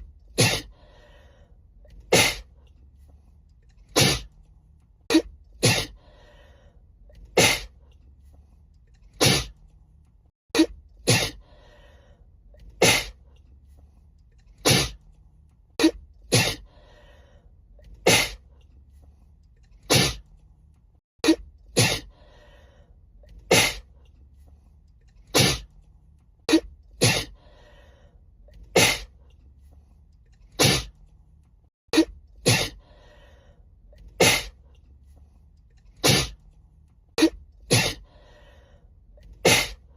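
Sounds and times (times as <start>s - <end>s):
woman sneezing: 0.4s - 0.7s, 5.1s - 5.9s, 10.6s - 11.4s, 27.0s - 27.3s, 37.2s - 38.0s, 39.4s - 39.8s.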